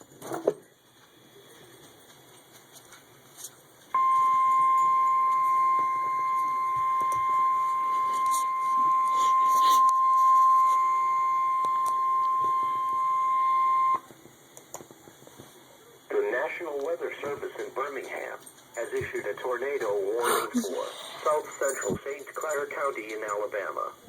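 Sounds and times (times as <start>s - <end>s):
weather radio alarm tone: 4.0s - 14.1s.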